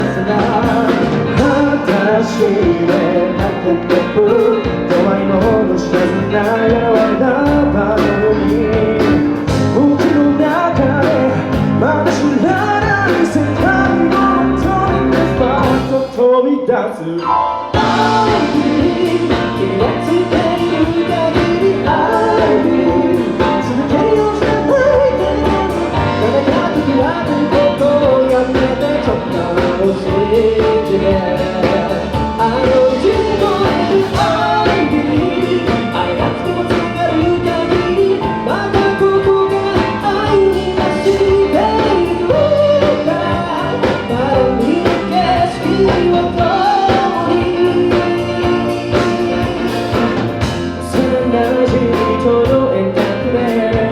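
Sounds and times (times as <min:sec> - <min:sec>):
steady drum beat: 0:00.0 - 0:16.1, 0:17.8 - 0:53.9
rock band playing live: 0:00.0 - 0:16.4, 0:17.2 - 0:53.9
person singing: 0:00.0 - 0:53.9.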